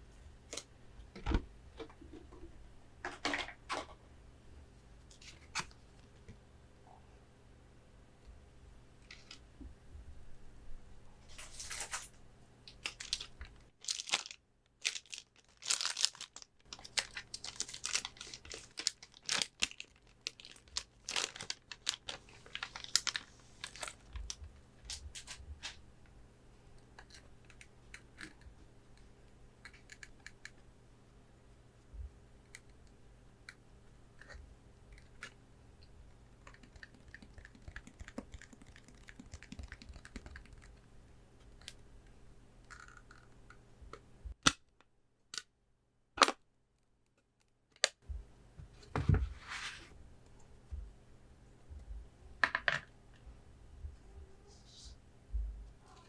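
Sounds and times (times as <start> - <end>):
packaging crinkling and tearing: 12.8 - 25.7.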